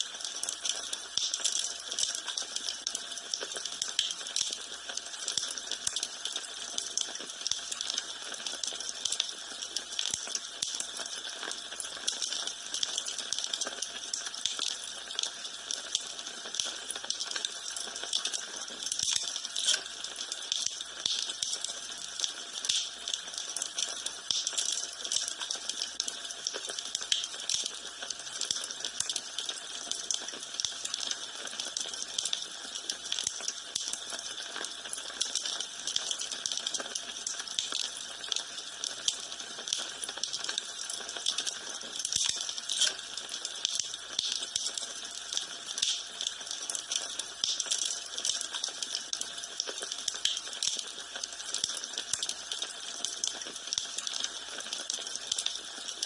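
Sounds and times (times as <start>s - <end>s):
wood fire crackling: 12.8s - 23.7s, 33.1s - 52.7s.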